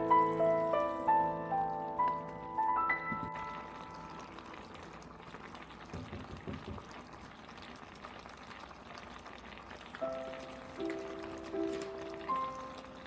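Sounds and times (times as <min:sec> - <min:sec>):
piano background music: 0:00.0 - 0:05.4, 0:09.9 - 0:13.0
liquid hiss of cooking: 0:00.0 - 0:13.0.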